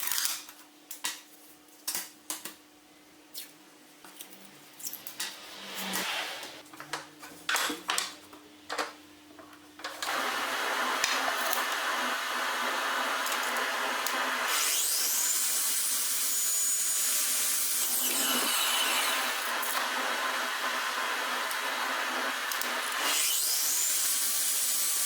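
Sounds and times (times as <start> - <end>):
power tool running: 10.0 - 25.0.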